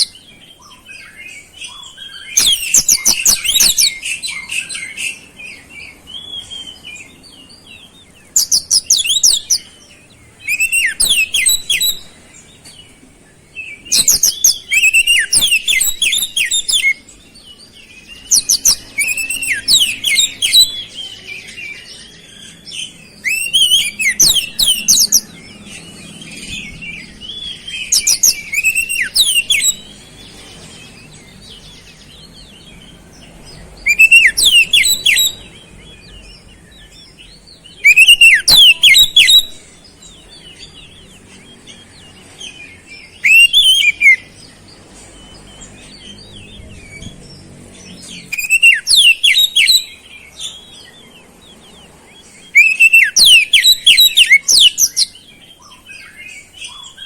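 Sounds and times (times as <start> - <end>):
bird singing whistled phrases: 0.0 - 7.2, 8.3 - 9.7, 10.4 - 12.1, 13.8 - 17.1, 17.8 - 25.4, 26.3 - 30.0, 33.8 - 39.7, 43.1 - 44.4, 48.3 - 51.0, 52.4 - 57.0.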